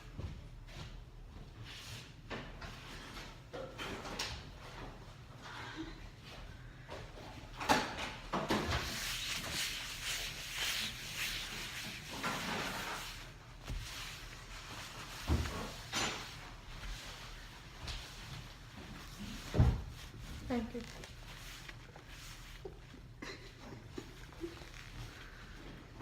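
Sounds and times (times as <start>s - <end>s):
rustling: 8.7s - 23.1s.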